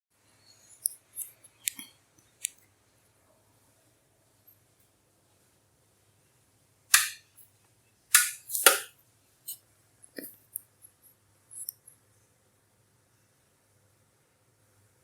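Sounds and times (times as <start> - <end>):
electric pan popping: 8.2 - 8.9.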